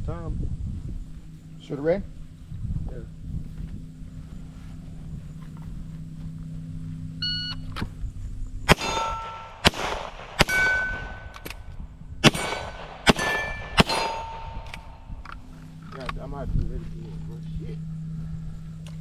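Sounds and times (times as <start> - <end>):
short beep: 7.2 - 7.7
steel plates ringing: 8.7 - 9.6, 10.4 - 11.4, 12.3 - 15.1
gunshots: 8.7 - 11.6, 12.2 - 15.1.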